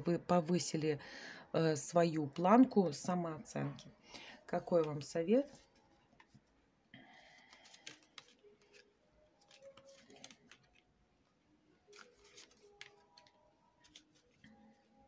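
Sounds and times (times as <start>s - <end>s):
cards clicking and rustling: 7.2s - 11.0s, 11.9s - 14.8s.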